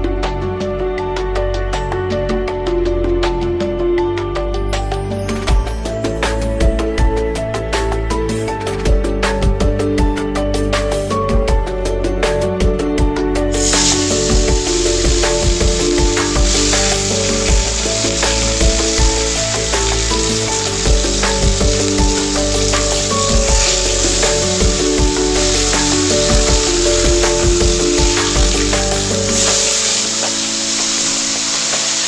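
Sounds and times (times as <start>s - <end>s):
simple background melody: 0.0s - 32.0s
food sizzling in hot oil: 13.5s - 32.0s.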